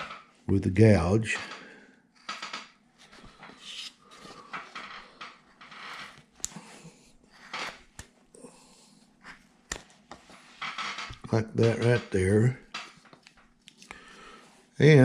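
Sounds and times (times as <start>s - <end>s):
gouge scraping wood: 3.2s - 4.2s.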